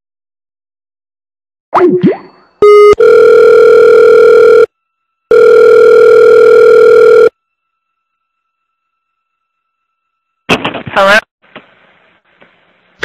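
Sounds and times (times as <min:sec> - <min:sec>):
long telephone tones: 0:02.6 - 0:09.4.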